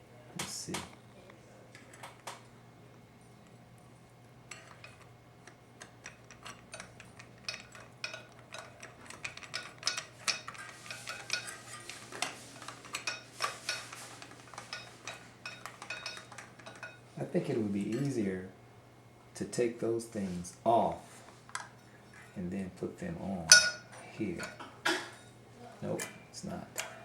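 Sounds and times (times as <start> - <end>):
metal clutch parts clinking: 4.5 - 17.0, 23.4 - 24.6.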